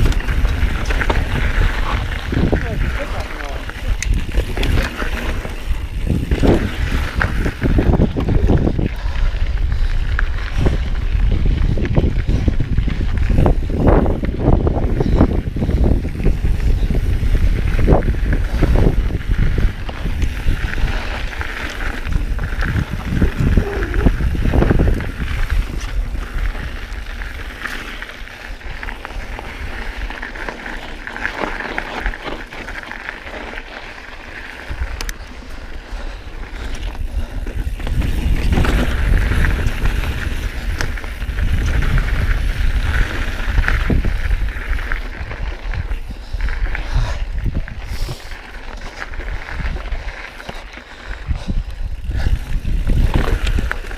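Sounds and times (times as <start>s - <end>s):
bike knocks and rattles: 0.0s - 8.7s, 37.2s - 44.2s
bike tyres on dirt: 0.0s - 53.9s
wind rumbling on microphone: 0.0s - 53.9s.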